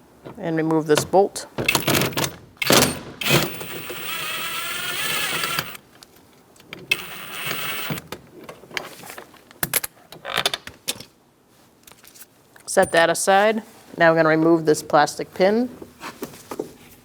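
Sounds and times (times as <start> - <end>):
power driver whining: 1.7 - 5.8, 6.9 - 8.1.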